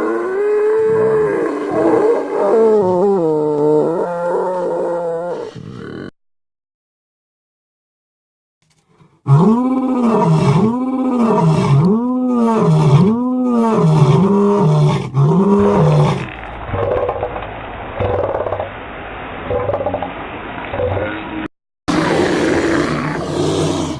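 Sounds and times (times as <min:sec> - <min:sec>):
creature roaring calls: 0:00.0 - 0:06.1, 0:09.3 - 0:17.4, 0:18.0 - 0:18.7, 0:20.8 - 0:23.9.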